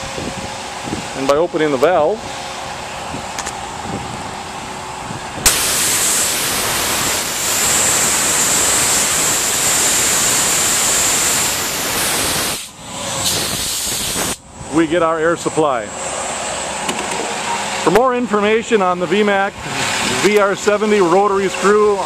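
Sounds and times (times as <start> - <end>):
air compressor humming: 0.0 - 22.0
compressed air hissing with whistle: 5.4 - 14.4.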